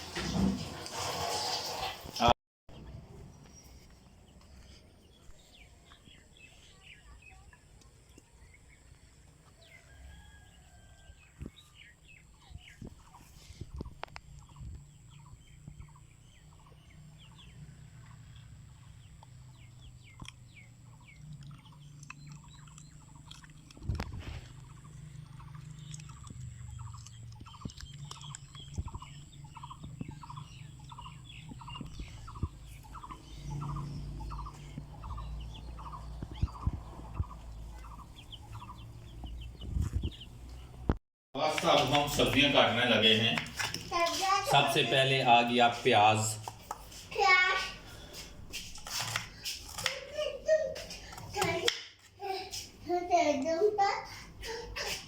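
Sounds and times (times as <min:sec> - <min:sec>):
birds chirping: 0:02.7 - 0:48.6
repeated bird calls: 0:11.5 - 0:40.8.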